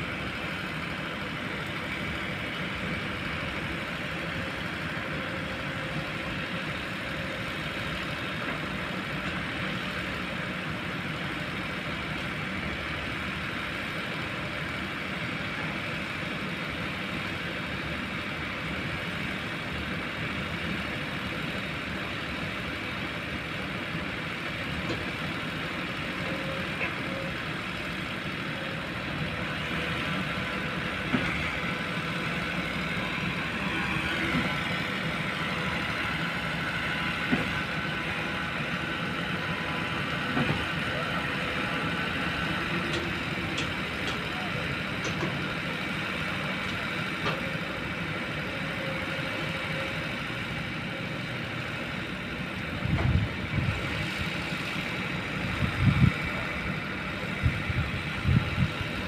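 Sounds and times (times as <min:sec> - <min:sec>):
excavator diesel engine running: 0:00.0 - 0:59.0.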